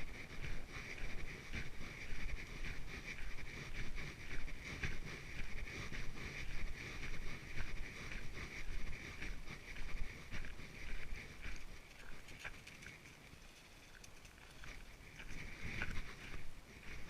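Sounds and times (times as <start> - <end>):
footsteps on a trail: 0.0 - 17.0
wind rumble on microphone: 14.5 - 17.0.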